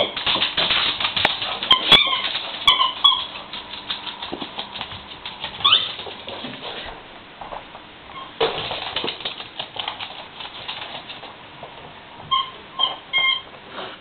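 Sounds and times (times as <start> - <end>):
rapid scratchy clicking: 0.0 - 6.6, 8.4 - 11.4
squeaky toy squeaking: 1.7 - 3.4, 12.3 - 13.5.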